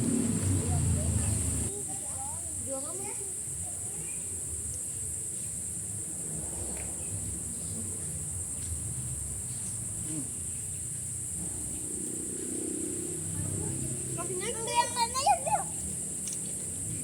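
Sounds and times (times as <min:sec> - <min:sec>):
low background rumble: 0:00.0 - 0:01.7
faint distant voices: 0:00.0 - 0:08.7, 0:13.0 - 0:17.0
insects buzzing shrilly: 0:00.0 - 0:17.0.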